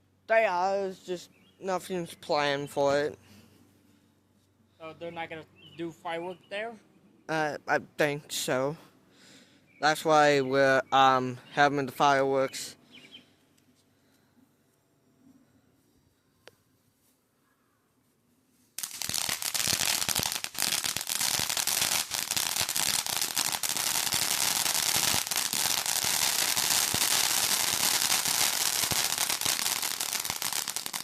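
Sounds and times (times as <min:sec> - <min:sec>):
firework crackling: 0:18.8 - 0:31.0.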